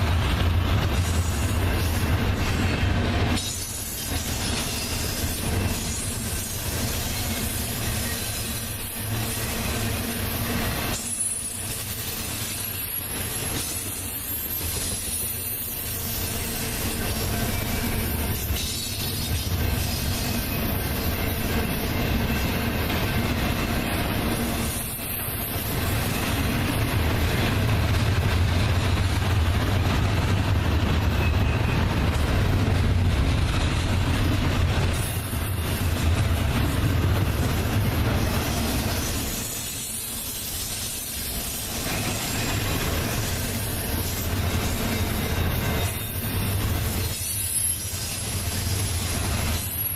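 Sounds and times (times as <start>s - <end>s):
steel wheels rumbling on rail: 0.0s - 49.9s
faint high wheel squeal: 3.4s - 27.0s, 31.1s - 32.0s, 38.2s - 49.9s.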